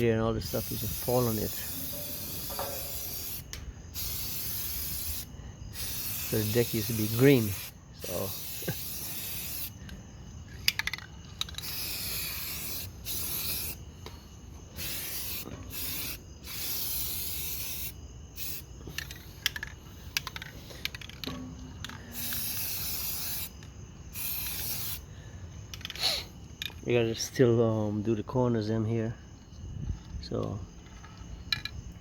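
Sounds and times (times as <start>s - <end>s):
aerosol can spraying: 0.5s - 9.7s, 11.6s - 13.8s, 14.8s - 18.7s, 22.1s - 23.6s.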